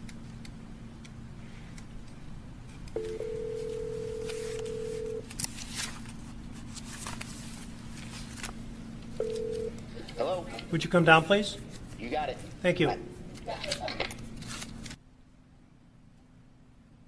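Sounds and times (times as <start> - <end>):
low steady hum: 0.0 - 17.0
telephone dial tone: 3.0 - 5.2, 9.2 - 9.8.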